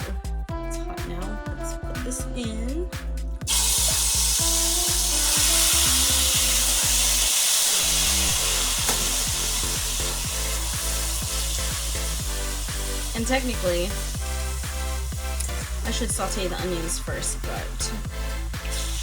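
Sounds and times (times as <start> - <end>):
chicken sizzling in a pan: 3.5 - 18.0, 18.7 - 19.0.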